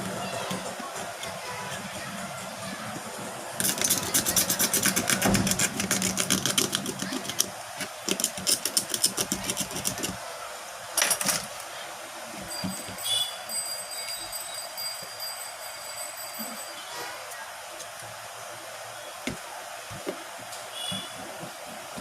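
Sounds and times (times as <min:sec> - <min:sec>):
rapid clicking: 0:03.6 - 0:10.2.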